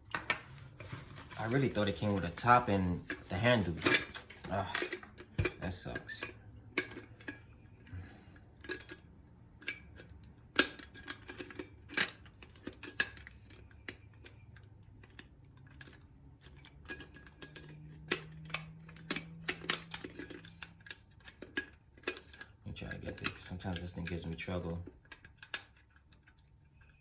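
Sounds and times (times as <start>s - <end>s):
metal cookware clicking and clinking: 3.0s - 7.6s, 8.6s - 14.4s, 15.1s - 25.8s.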